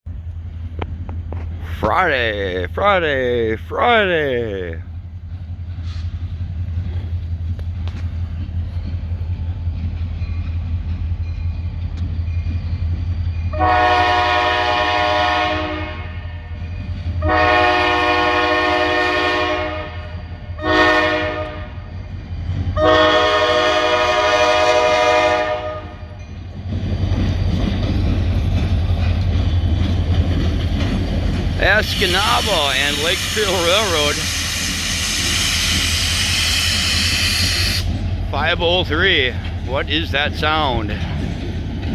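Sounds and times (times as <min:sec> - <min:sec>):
locomotive engine drone: 0:00.1 - 0:41.9
locomotive horn blasts: 0:13.5 - 0:16.6, 0:17.2 - 0:21.9, 0:22.8 - 0:26.2, 0:31.6 - 0:37.9.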